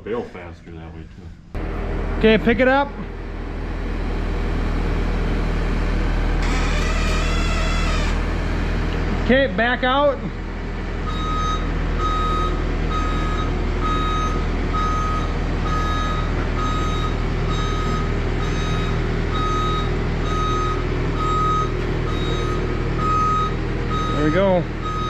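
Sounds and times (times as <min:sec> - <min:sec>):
machine engine running: 0:01.6 - 0:09.6
reversing alarm beeping: 0:11.1 - 0:25.0.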